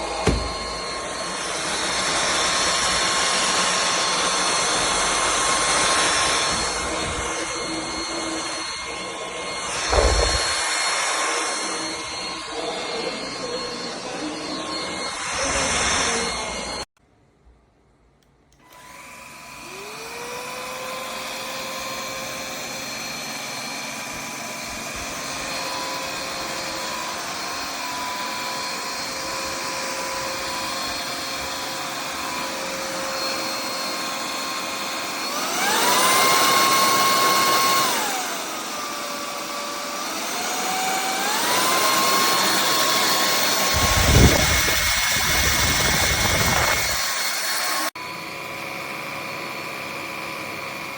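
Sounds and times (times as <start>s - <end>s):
stick vacuum motor whine: 0.0s - 16.9s, 18.5s - 50.9s
low bump: 9.8s - 10.6s.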